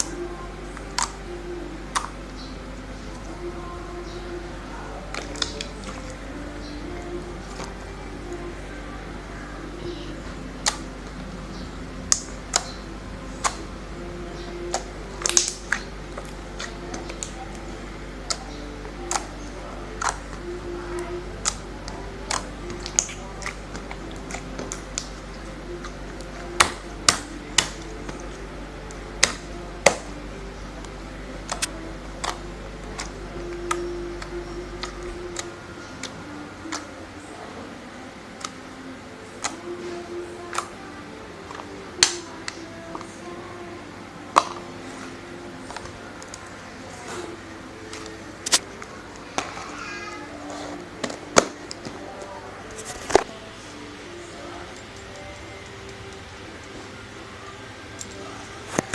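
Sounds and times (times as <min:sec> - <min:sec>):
steady low hum: 0:00.0 - 0:58.9
slime clicking and popping: 0:14.7 - 0:17.4, 0:21.0 - 0:28.2, 0:31.4 - 0:32.4.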